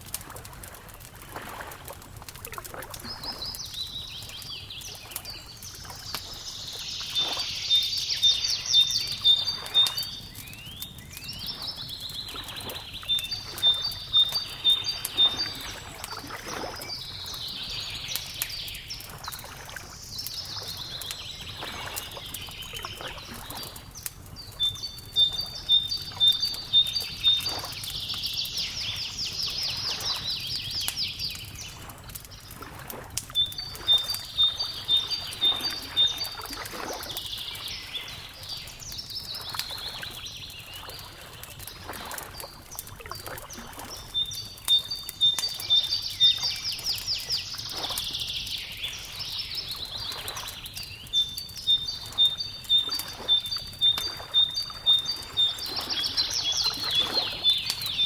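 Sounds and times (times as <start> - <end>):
wood fire crackling and popping: 0.0 - 58.0
songbirds singing: 2.3 - 58.0.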